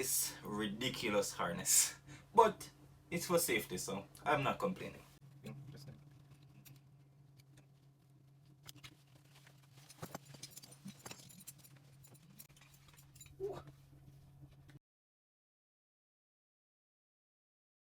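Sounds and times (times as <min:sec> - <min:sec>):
steady low hum: 0:00.0 - 0:14.8
faint handling clicks and rustling: 0:04.9 - 0:14.8.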